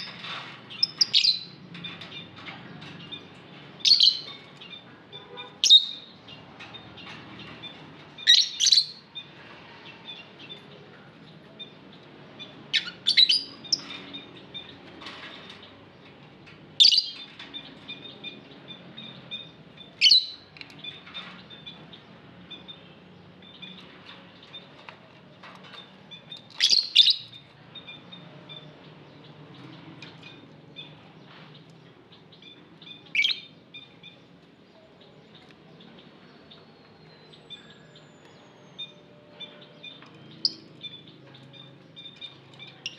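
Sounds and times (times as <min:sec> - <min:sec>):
soft bird twittering: 0:00.0 - 0:15.7, 0:16.8 - 0:42.9.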